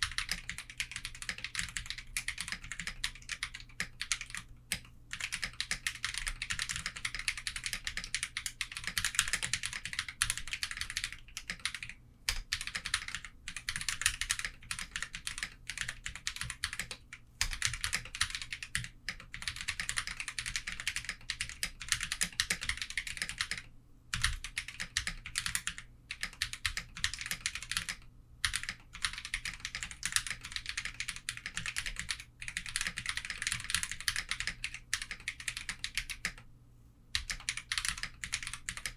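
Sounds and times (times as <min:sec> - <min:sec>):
mechanical keyboard typing: 0:00.0 - 0:36.4, 0:37.2 - 0:38.9.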